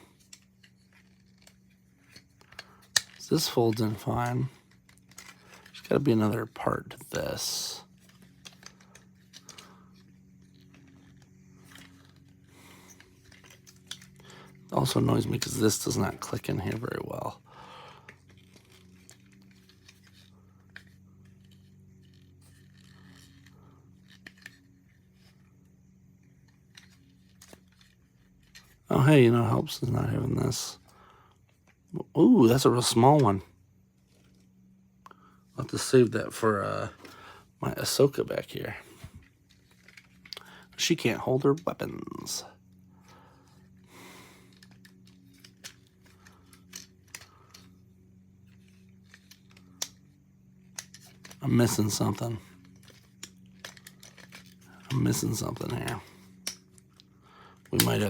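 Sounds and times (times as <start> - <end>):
soft rustle: 0.0 - 28.9
low steady hum: 0.0 - 58.0
plastic toy parts clicking: 0.2 - 17.0, 18.0 - 25.5, 26.3 - 28.8, 39.1 - 41.7, 43.4 - 47.8, 48.4 - 58.0.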